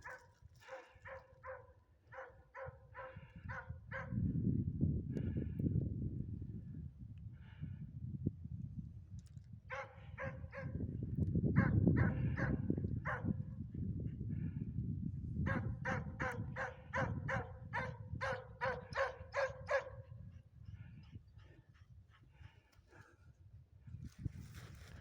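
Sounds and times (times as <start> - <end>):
dog barking: 0.0 - 4.2, 9.7 - 10.8, 11.6 - 13.4, 15.5 - 20.1.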